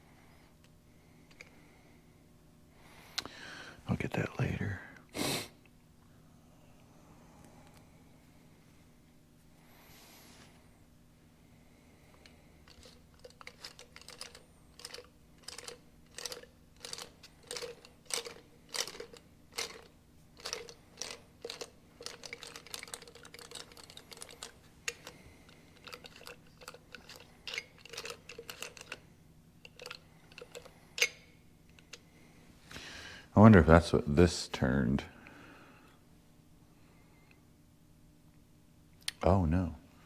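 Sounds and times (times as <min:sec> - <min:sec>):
small metal parts clinking: 0:12.7 - 0:32.1.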